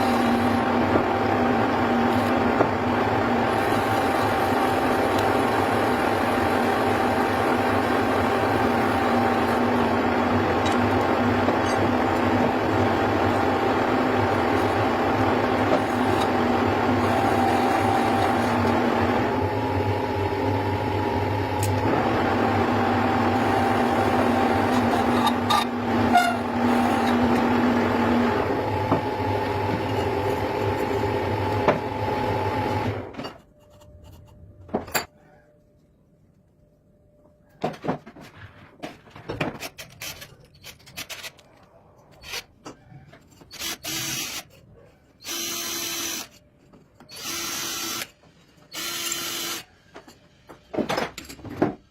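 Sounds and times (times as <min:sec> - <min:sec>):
tools clicking and scraping metal: 0:39.5 - 0:44.7.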